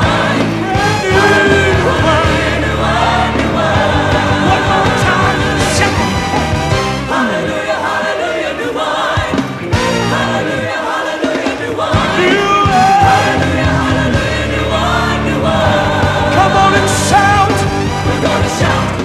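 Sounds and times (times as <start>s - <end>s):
live band playing: 0.0s - 7.6s, 9.3s - 10.6s, 15.9s - 19.0s
gospel choir singing: 0.0s - 19.0s.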